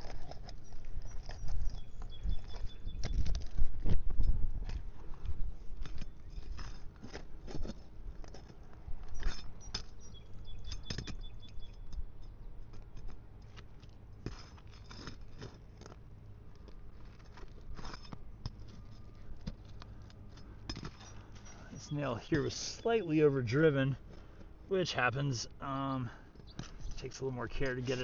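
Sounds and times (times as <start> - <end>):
pry bar clicking and scraping: 5.8 - 12.0.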